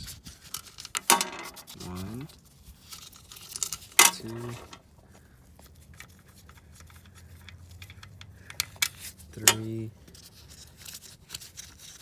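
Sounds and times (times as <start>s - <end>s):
metal bolts clicking and scraping: 0.4s - 2.3s, 2.9s - 4.8s, 5.9s - 12.0s.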